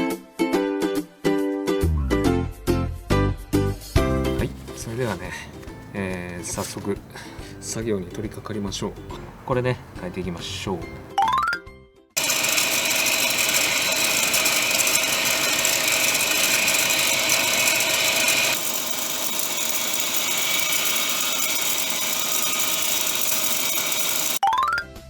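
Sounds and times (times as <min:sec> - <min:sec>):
car engine running: 0:04.0 - 0:11.1
belt drive rattling: 0:05.2 - 0:11.1.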